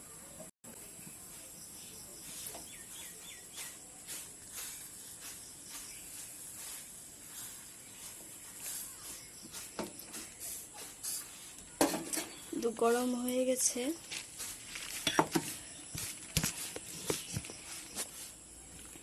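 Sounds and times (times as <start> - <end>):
pan and utensils clicking: 11.0 - 12.4.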